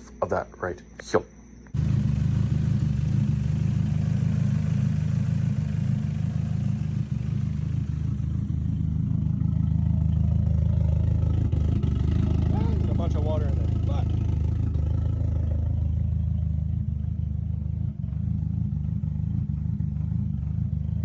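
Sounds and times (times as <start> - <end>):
car engine idling: 1.8 - 21.0.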